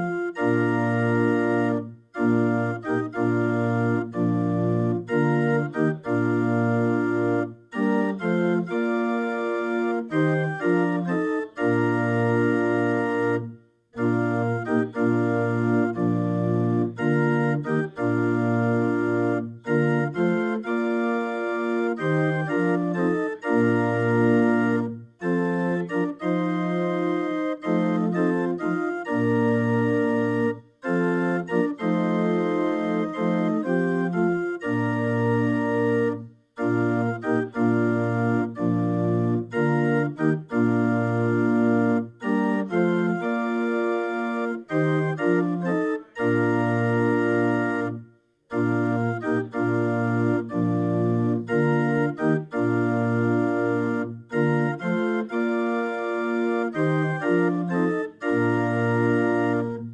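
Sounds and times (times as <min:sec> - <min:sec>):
organ playing a hymn: 0:00.0 - 0:59.9.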